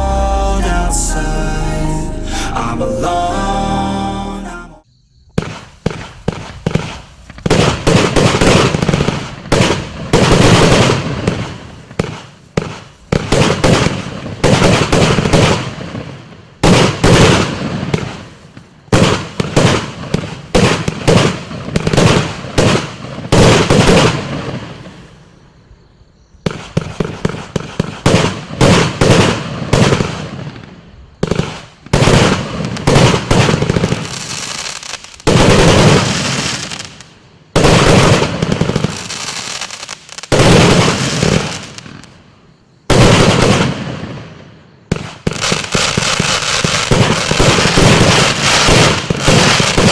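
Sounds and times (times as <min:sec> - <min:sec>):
firework battery firing: 0:05.4 - 0:18.3, 0:31.3 - 0:42.1.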